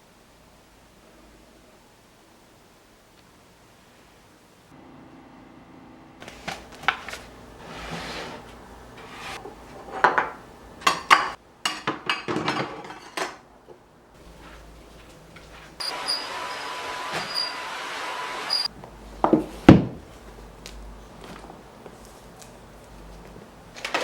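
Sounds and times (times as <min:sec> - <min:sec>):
dishes and cutlery clinking: 0:09.7 - 0:13.5.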